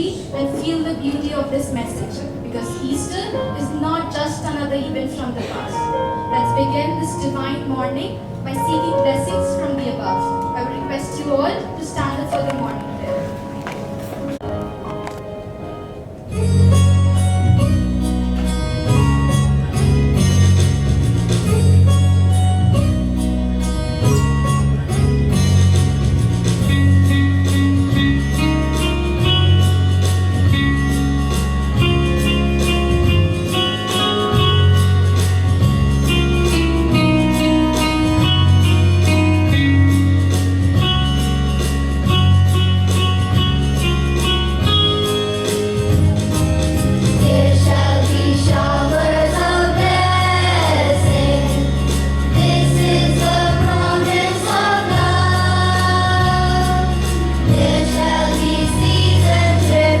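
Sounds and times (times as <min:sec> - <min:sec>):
plucked or keyboard notes: 0:05.4 - 1:00.0
repeating bass line: 0:46.0 - 1:00.0
voices singing: 0:47.2 - 1:00.0.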